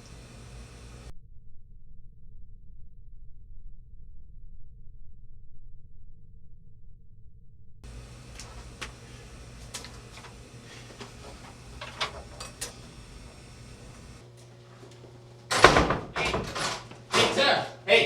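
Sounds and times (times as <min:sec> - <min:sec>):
low steady hum: 0:00.0 - 0:01.1.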